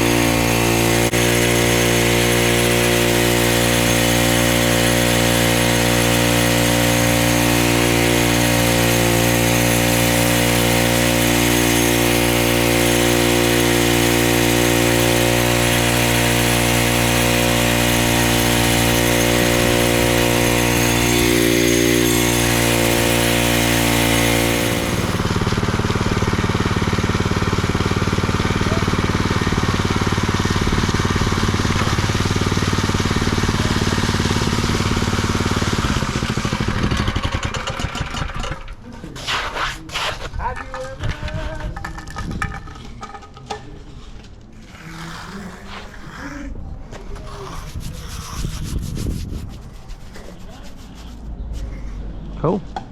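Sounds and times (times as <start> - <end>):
machine engine running: 0.0 - 38.4
rough dull engine: 0.0 - 38.7.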